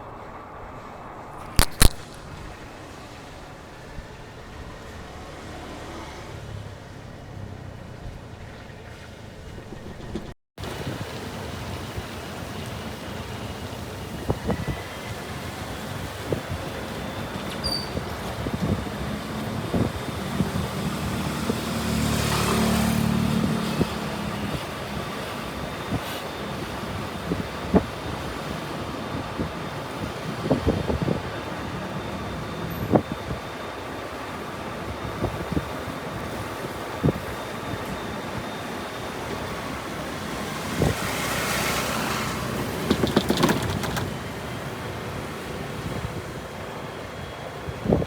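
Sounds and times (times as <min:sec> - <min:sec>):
road and wind noise: 0:00.0 - 0:48.0
vehicle engine hum: 0:00.0 - 0:48.0
sharp clicks: 0:01.4 - 0:02.4.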